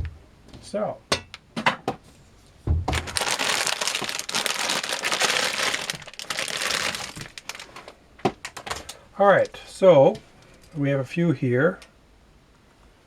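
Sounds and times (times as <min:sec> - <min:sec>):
plastic packaging crinkling: 0:02.9 - 0:09.0.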